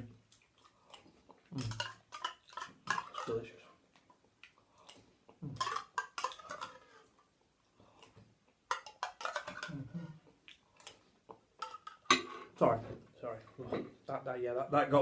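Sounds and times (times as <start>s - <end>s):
chewing and mouth noises: 0.2s - 3.2s, 3.9s - 6.8s, 7.8s - 8.2s, 8.9s - 11.4s
spoon scraping metal container: 1.6s - 3.6s, 5.6s - 7.1s, 8.7s - 10.0s.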